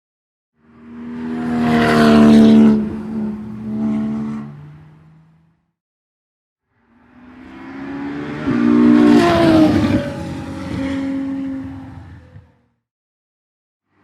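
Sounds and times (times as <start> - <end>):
race car passing at high revs: 0.6 - 5.5, 6.9 - 12.6.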